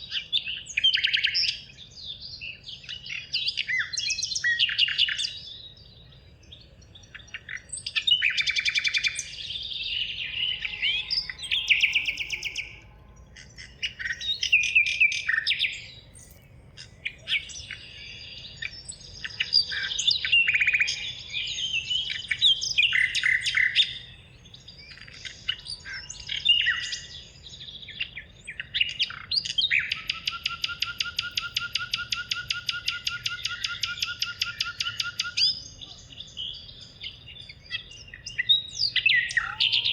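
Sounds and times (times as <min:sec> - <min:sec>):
songbirds chirping: 0:00.0 - 0:39.9
rapid bird trill: 0:08.4 - 0:18.5, 0:39.1 - 0:39.9.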